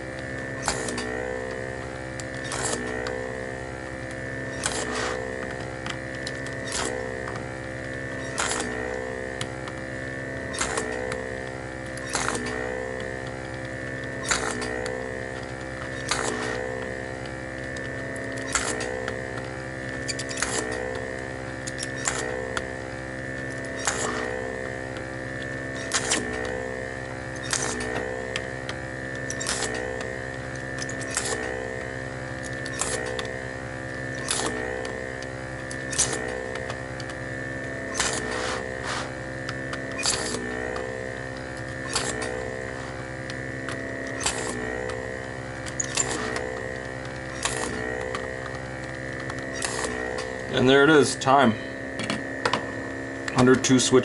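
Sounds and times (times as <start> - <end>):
vacuum pump whining: 0.0 - 54.0
desoldering trigger click: 32.4 - 33.4, 34.0 - 38.3, 43.2 - 50.3.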